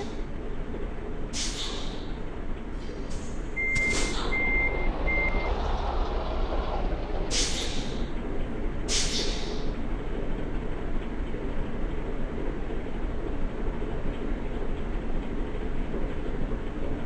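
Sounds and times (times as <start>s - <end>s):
engine rumble: 0.0s - 17.0s
vehicle reversing alarm beeping: 3.6s - 6.6s
air hissing: 7.3s - 8.1s, 8.9s - 9.6s.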